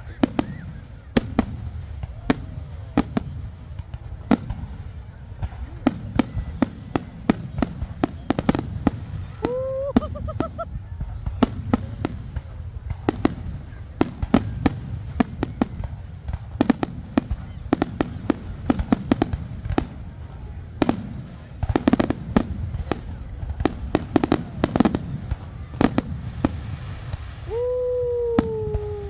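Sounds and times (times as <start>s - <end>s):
firework bangs and cracks: 0.1s - 29.0s.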